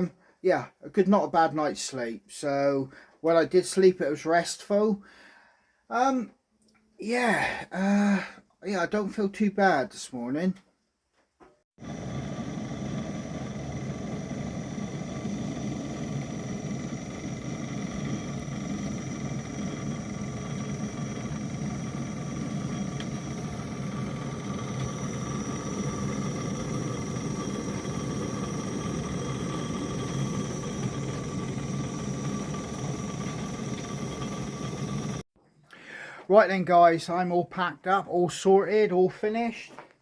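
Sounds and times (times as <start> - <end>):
gas stove burner roaring: 11.8 - 35.2.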